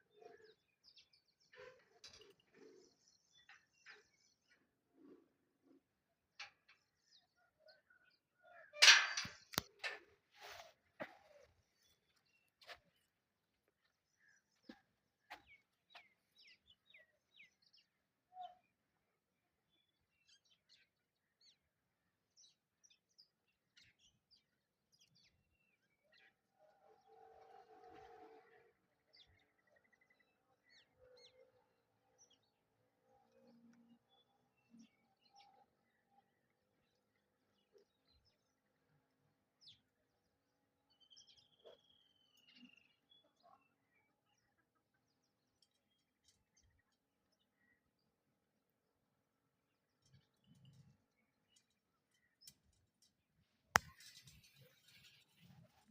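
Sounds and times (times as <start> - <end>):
faint bird chirps: 14.2 - 18.8.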